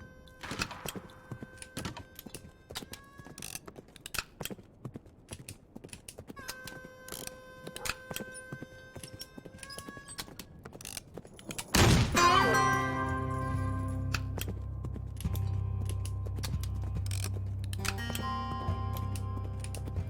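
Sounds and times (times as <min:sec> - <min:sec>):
slot game sound effects: 0:12.0 - 0:14.4
held electronic chord: 0:12.2 - 0:20.0.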